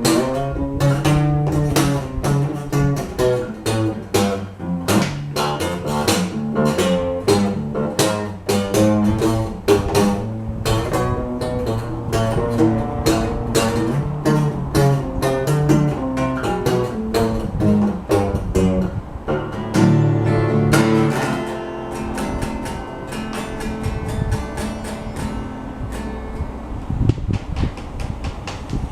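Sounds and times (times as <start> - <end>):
bass line: 0.0 - 21.3
picked acoustic guitar: 0.0 - 28.0.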